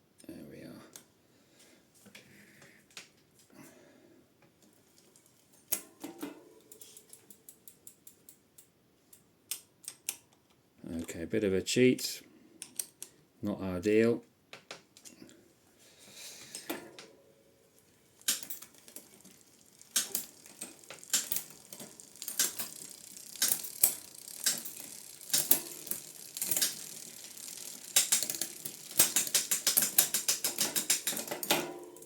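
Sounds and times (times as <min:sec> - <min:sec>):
metal ratchet clicking: 0:18.2 - 0:32.0.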